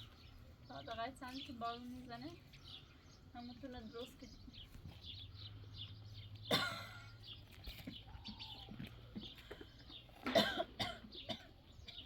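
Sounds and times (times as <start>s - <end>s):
person coughing: 10.3s - 12.0s.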